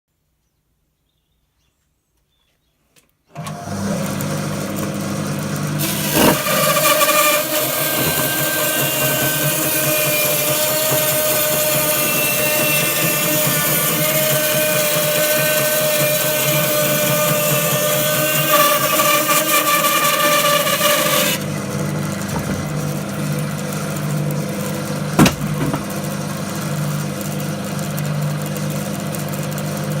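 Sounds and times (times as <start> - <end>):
bandsaw cutting wood: 3.4 - 28.1
bandsaw running: 3.4 - 30.0
single knocks: 25.2 - 26.0.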